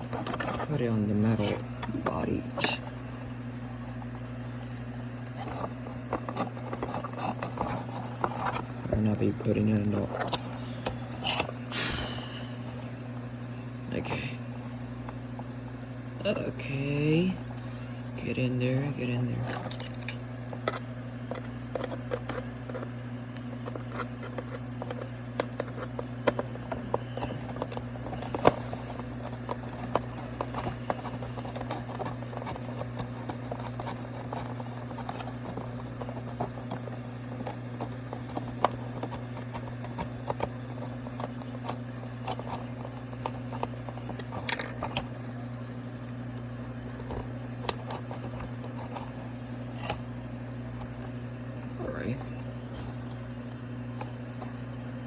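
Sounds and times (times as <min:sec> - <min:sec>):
plastic parts clicking: 0:19.6 - 0:22.4, 0:23.7 - 0:45.1.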